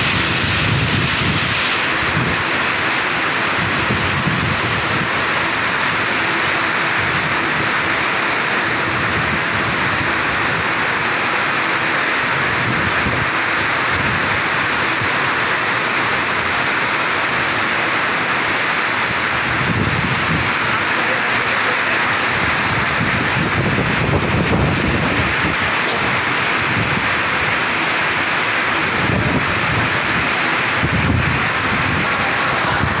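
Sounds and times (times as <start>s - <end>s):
heavy rain: 0.0s - 33.0s.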